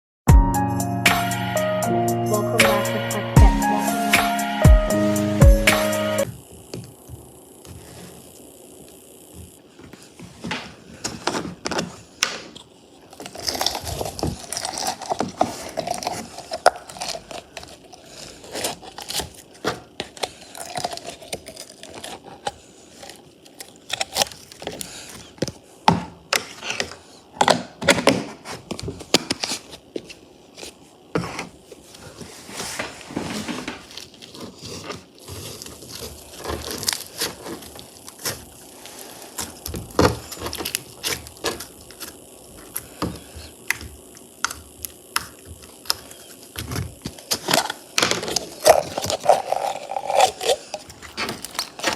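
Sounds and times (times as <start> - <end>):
slime squishing and crackling: 13.1 - 24.7.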